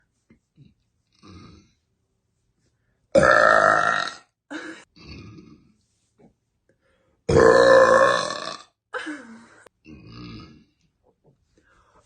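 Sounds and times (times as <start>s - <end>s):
woman burping loudly: 3.2s - 5.6s, 7.3s - 8.8s, 9.8s - 10.7s.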